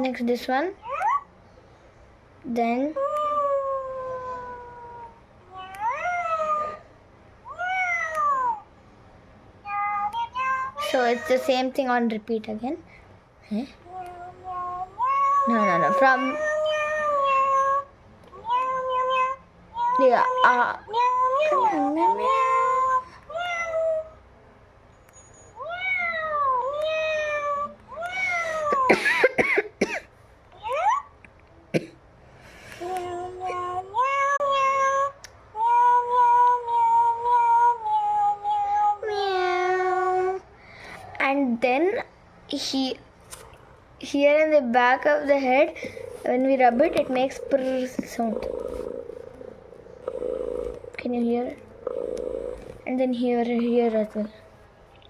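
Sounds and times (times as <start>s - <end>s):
toy cat meowing: 3.0s - 6.8s, 7.5s - 8.6s, 9.7s - 11.5s, 13.9s - 24.1s, 25.6s - 28.9s, 32.8s - 40.2s, 45.8s - 50.9s
sharp sweeping cries: 45.4s - 51.0s.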